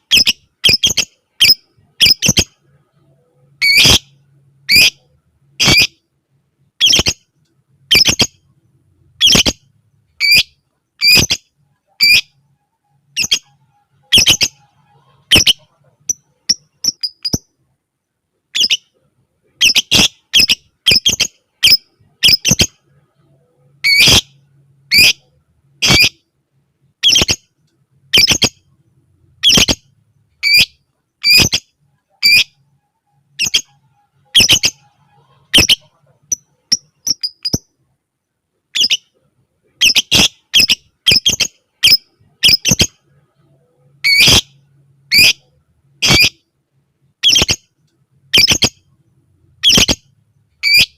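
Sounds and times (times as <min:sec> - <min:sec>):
bird squawking: 0:13.0 - 0:17.4, 0:19.6 - 0:22.7, 0:23.8 - 0:26.2, 0:33.3 - 0:37.6, 0:39.8 - 0:42.9, 0:44.0 - 0:46.4, 0:47.2 - 0:47.6, 0:48.3 - 0:48.8, 0:49.6 - 0:50.0, 0:50.6 - 0:50.9.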